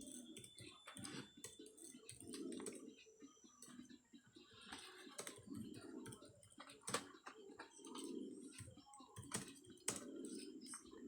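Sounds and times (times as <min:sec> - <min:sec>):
typing on computer keyboard: 0:00.0 - 0:02.8, 0:04.8 - 0:10.9.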